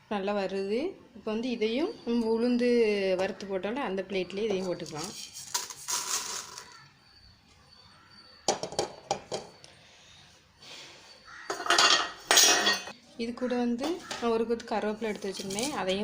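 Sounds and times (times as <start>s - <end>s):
dried lentils pouring onto a plate: 5.0s - 6.8s.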